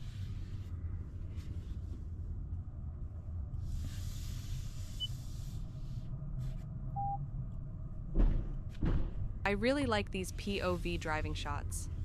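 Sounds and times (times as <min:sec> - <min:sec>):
car road noise rumble: 0:00.0 - 0:12.0
hiss: 0:03.6 - 0:05.6.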